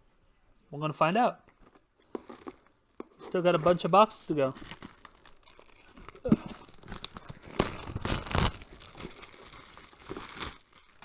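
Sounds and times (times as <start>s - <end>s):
packaging tearing and crinkling: 3.4s - 11.0s.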